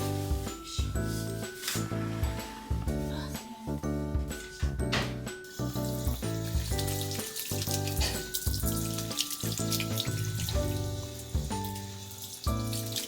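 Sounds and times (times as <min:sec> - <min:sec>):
background music with held notes: 0:00.0 - 0:13.0
tap water running into sink: 0:04.9 - 0:13.0.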